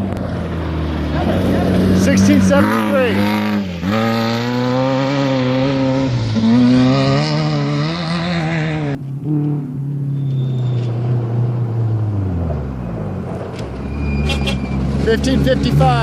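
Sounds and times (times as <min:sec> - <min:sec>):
race vehicle engine passing: 0:00.0 - 0:16.0.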